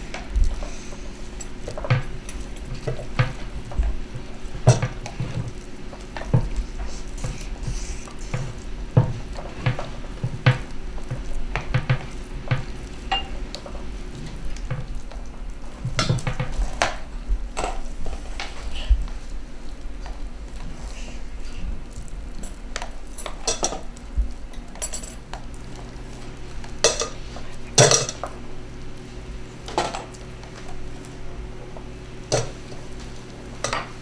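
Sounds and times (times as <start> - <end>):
utensil knocking and scraping in pan: 0.1 - 15.2, 15.8 - 17.8, 32.3 - 34.0.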